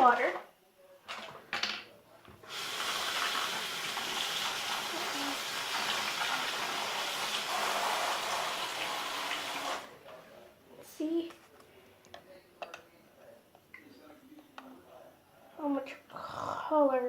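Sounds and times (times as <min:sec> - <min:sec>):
water running from a tap: 0:02.4 - 0:09.9.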